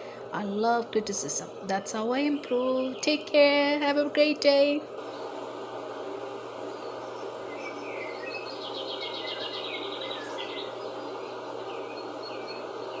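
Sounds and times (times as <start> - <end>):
steady background hiss: 0.0 - 13.0
small birds chirping: 2.1 - 3.5, 6.6 - 13.0.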